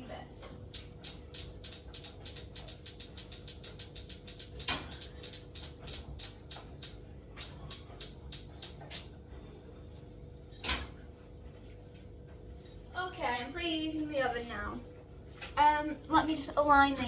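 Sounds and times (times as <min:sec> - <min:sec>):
oven spark igniter clicking: 0:00.6 - 0:09.2.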